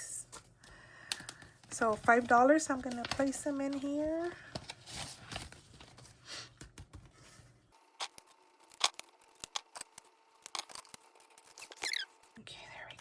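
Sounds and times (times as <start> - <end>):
paper bills rustling: 1.2 - 7.4.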